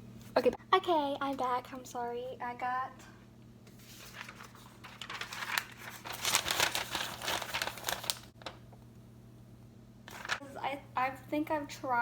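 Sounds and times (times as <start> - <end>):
packaging crinkling and rustling: 3.8 - 8.6, 10.1 - 10.4.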